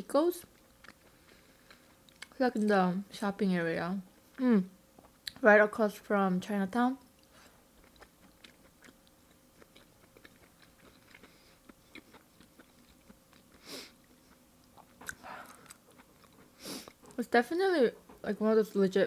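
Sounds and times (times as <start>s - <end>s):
faint chewing: 0.4s - 2.7s, 7.1s - 18.8s.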